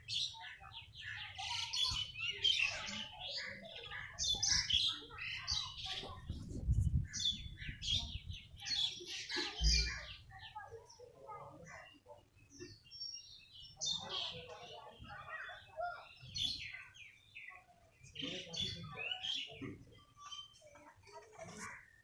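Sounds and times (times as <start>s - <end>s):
small birds chirping: 0.0s - 22.0s.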